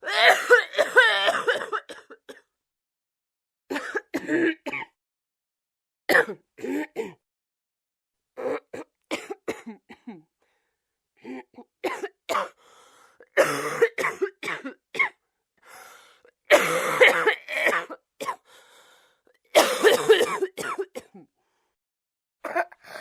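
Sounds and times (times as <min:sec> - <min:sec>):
person coughing: 0:00.0 - 0:02.4, 0:03.7 - 0:05.0, 0:06.1 - 0:07.2, 0:08.4 - 0:10.2, 0:11.3 - 0:12.6, 0:13.4 - 0:15.2, 0:16.5 - 0:18.4, 0:19.6 - 0:21.3, 0:22.5 - 0:23.0.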